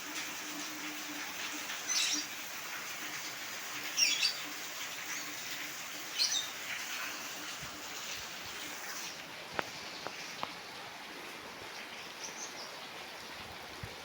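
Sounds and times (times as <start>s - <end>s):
rain falling: 0.0s - 14.0s
bird chirping: 4.0s - 4.5s, 6.1s - 6.6s.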